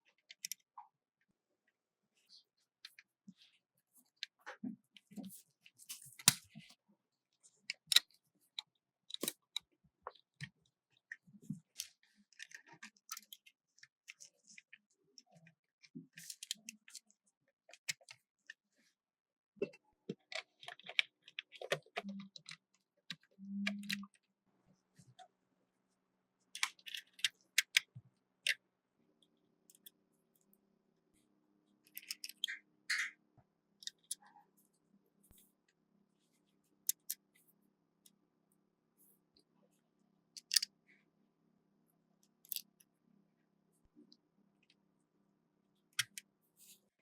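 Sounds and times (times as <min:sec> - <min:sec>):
model car parts clicking: 0:26.5 - 0:28.6, 0:31.8 - 0:33.1, 0:36.9 - 0:37.2, 0:40.4 - 0:40.7, 0:42.3 - 0:42.8, 0:46.0 - 0:46.3.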